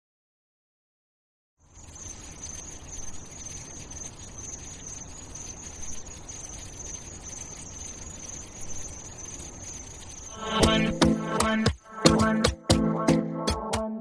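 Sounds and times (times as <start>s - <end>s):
faint crackle: 1.6s - 12.3s
high-pitched steady tone: 1.7s - 13.1s.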